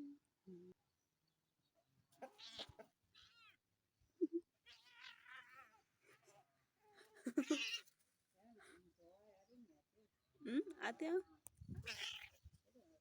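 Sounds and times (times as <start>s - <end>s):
cat meowing and yowling: 2.2s - 3.5s.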